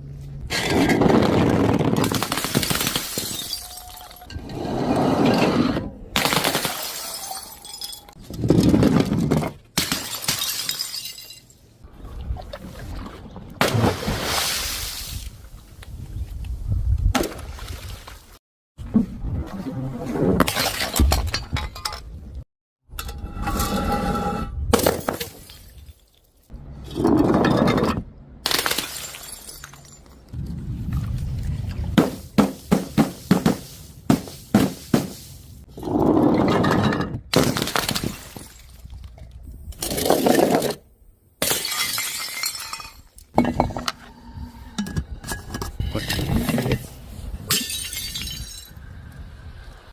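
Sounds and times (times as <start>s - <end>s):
glass bottles shattering: 2.0s - 4.4s, 6.6s - 8.2s, 9.8s - 11.6s, 28.5s - 30.2s, 41.4s - 43.8s, 47.5s - 48.8s.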